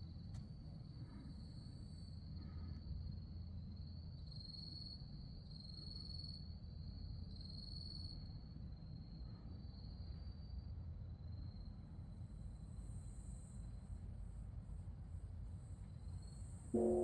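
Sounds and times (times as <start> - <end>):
low steady rumble: 16.8 - 17.0.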